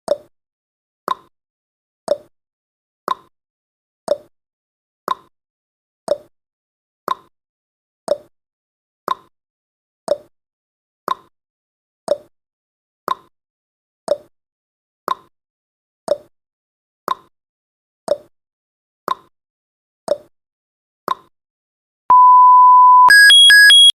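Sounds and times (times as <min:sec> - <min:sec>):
quick higher electronic beeps: 0:22.1 - 0:23.9
steady beep: 0:22.1 - 0:24.0.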